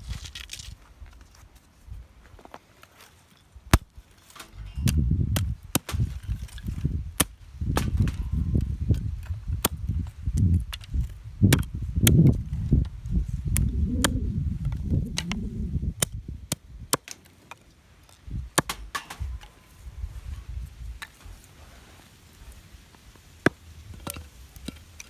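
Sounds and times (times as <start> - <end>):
wood fire crackling and popping: 3.7 - 12.4, 18.4 - 20.3
low uneven rumble: 4.3 - 10.4.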